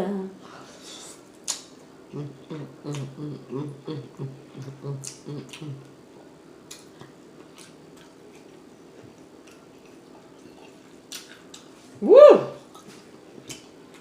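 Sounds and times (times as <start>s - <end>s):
low steady hum: 0.0s - 14.0s
wet mouth clicks of eating: 1.4s - 1.7s
woman exclaiming: 12.0s - 12.6s.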